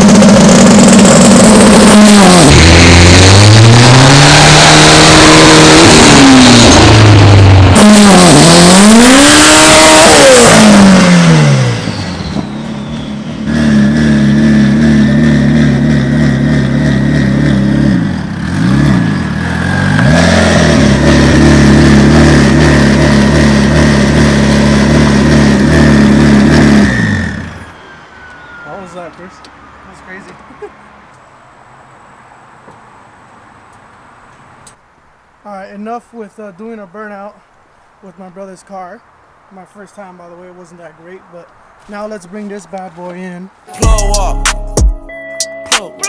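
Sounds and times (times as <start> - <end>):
car engine revving: 0.0 - 30.6.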